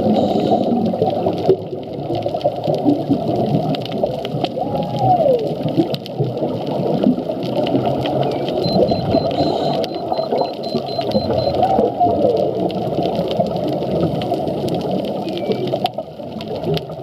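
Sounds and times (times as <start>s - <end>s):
steady underwater rumble: 0.0s - 17.0s
whale call underwater: 4.5s - 5.7s, 8.0s - 12.9s, 15.1s - 15.8s
scattered clicks: 7.4s - 17.0s.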